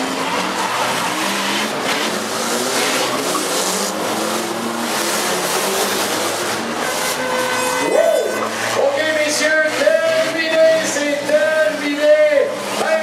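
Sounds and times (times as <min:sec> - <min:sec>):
car engines revving: 0:00.0 - 0:13.0.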